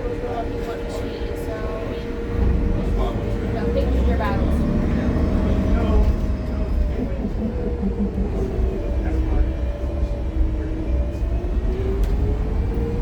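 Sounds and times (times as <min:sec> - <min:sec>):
bus engine rumble: 0:00.0 - 0:13.0
drivetrain whine: 0:00.0 - 0:13.0.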